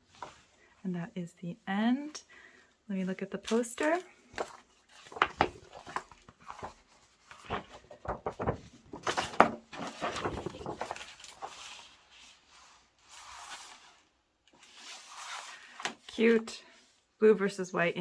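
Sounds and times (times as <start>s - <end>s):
paper crinkling and rustling: 3.1s - 16.4s.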